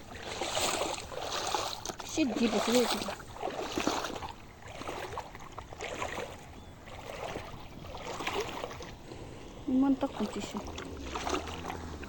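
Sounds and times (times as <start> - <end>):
floodwater splashing and sloshing: 0.0 - 12.0.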